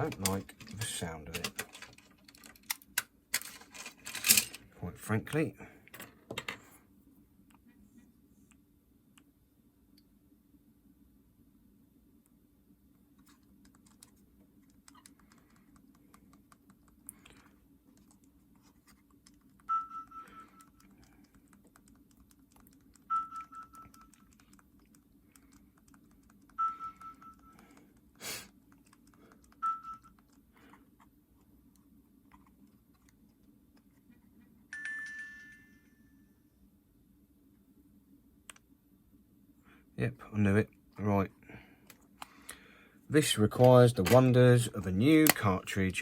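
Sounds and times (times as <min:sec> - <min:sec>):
game console clicking and tapping: 0:00.0 - 0:03.6, 0:13.3 - 0:30.4.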